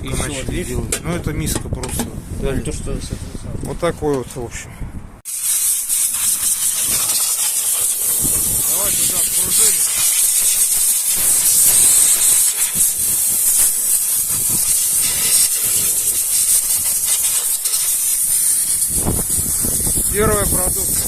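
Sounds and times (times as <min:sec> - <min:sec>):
high-pitched hiss: 0:05.3 - 0:21.0.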